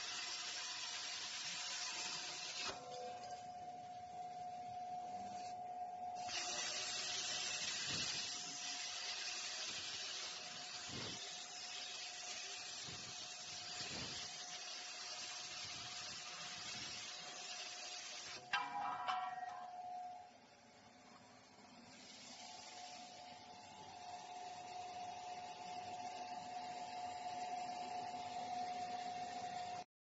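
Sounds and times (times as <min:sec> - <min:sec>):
plasma cutting torch hissing: 0:00.0 - 0:02.8, 0:06.2 - 0:18.4, 0:21.9 - 0:23.4.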